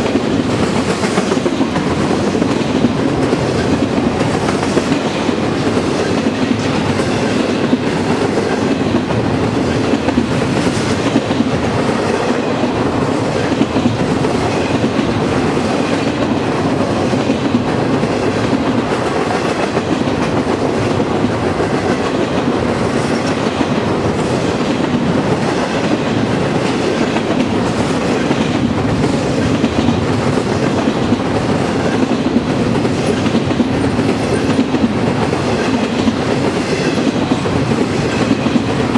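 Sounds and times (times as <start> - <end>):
railroad cars rolling on rails: 0.0 - 38.9.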